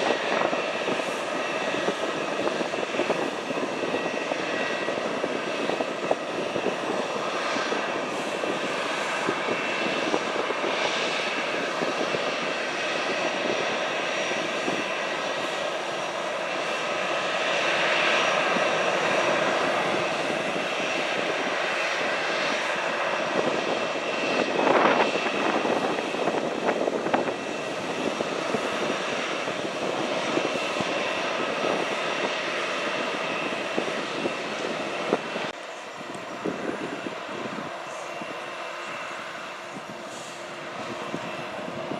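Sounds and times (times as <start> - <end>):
airliner engines whining: 0.0 - 41.9.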